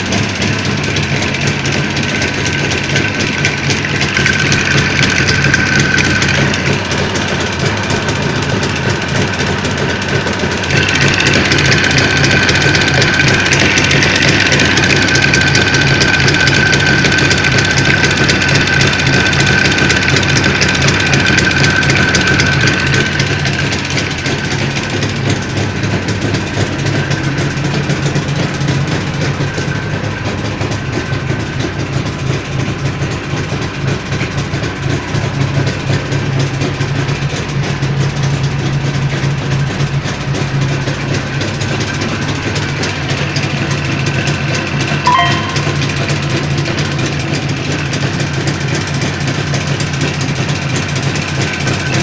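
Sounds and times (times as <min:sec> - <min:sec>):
two-stroke engine idling with knock: 0:00.0 - 0:52.0
high whine: 0:45.1 - 0:46.5.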